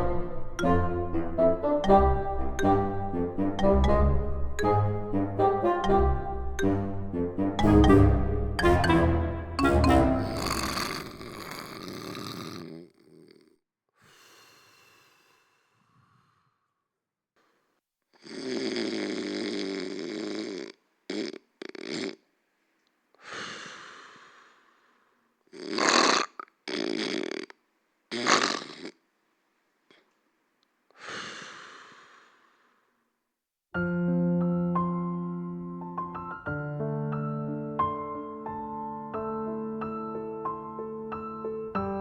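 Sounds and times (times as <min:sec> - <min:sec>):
person snoring: 0:10.2 - 0:16.3, 0:18.2 - 0:22.2.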